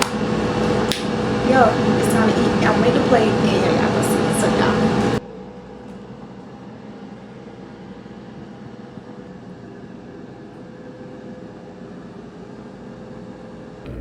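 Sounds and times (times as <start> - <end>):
appliance fan hum: 0.0 - 5.9.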